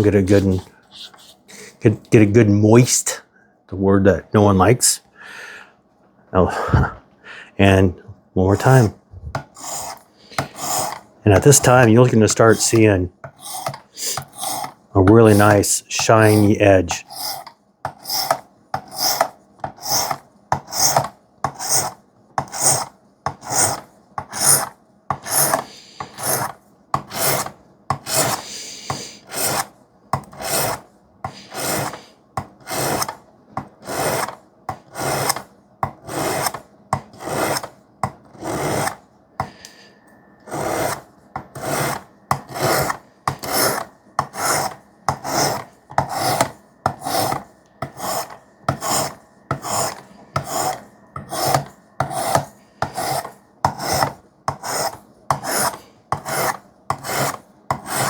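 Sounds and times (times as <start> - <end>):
knife rasping on sharpening stone: 9.6 - 11.7, 13.4 - 15.6, 16.2 - 26.5, 27.1 - 29.7, 30.3 - 32.0, 32.7 - 33.1, 33.8 - 35.4, 37.2 - 37.7, 38.4 - 39.0, 41.6 - 58.0.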